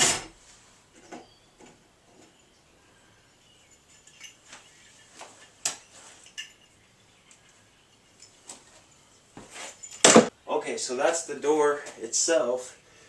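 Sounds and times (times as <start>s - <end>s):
tools and metal hardware clinking: 3.3s - 10.3s.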